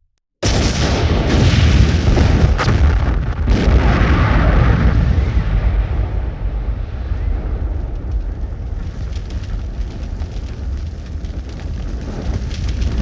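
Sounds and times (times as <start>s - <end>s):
crackling debris: 0.4s - 13.0s
deep rumble: 0.4s - 13.0s
explosion blast: 0.4s - 13.0s.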